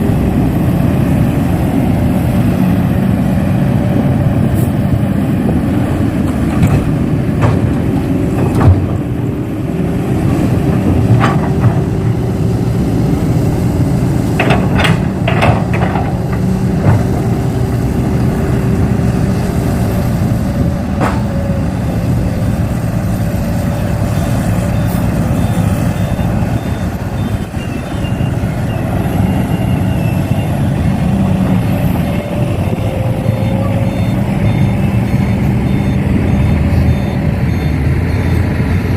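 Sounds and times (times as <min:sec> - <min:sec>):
heavy equipment engine running: 0:00.0 - 0:38.9
sharp clicks and knocks: 0:14.4 - 0:17.1.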